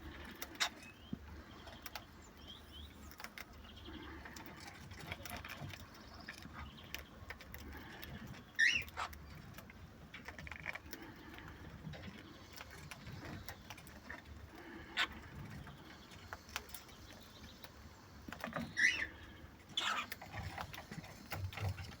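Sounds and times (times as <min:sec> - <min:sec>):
birds pecking at carrot: 0:00.0 - 0:22.0
cockatiel chirps: 0:18.7 - 0:19.1.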